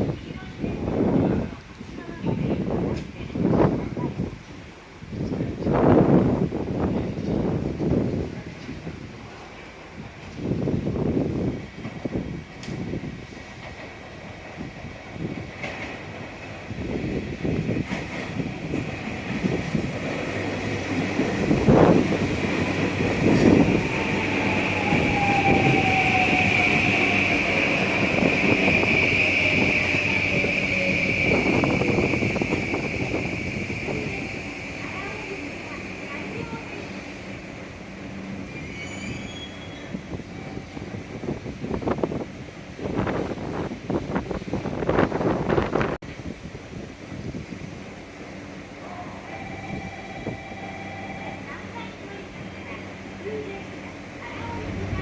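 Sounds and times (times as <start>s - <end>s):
train running: 0.0s - 55.0s
wind buffeting microphone: 0.0s - 55.0s
train wheel squeals: 23.4s - 34.4s, 38.4s - 40.6s.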